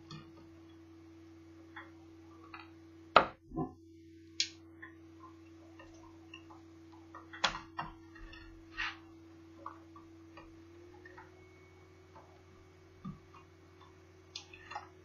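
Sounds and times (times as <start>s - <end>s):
steady low hum: 0.0s - 15.0s
clicks and knocks of laptop parts: 7.1s - 8.5s.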